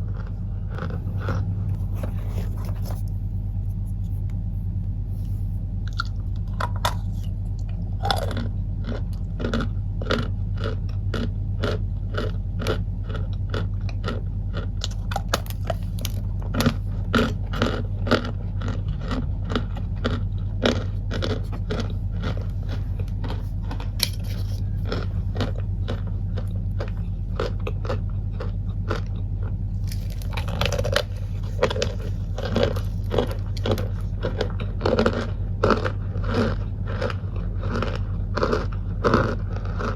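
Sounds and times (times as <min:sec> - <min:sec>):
cornstarch crunching: 0:00.0 - 0:04.5, 0:05.1 - 0:39.9
steady low hum: 0:00.0 - 0:39.9.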